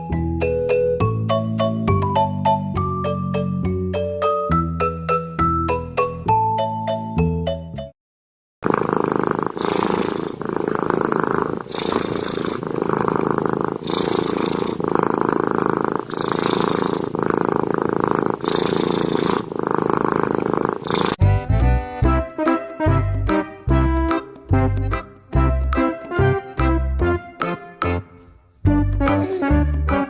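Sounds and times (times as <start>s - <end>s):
cat purring: 8.6s - 21.2s.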